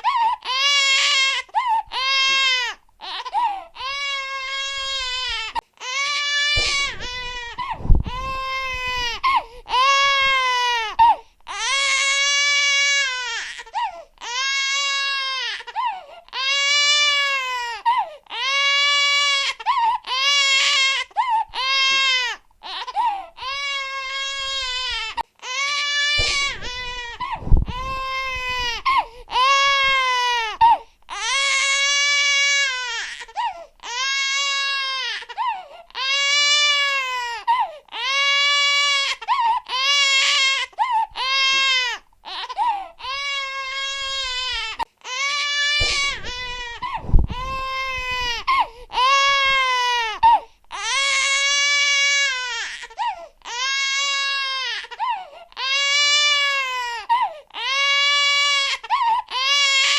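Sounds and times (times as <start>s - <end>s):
infant crying: 0.0s - 59.9s
low thump: 6.6s - 9.4s, 26.2s - 28.9s, 45.8s - 48.7s.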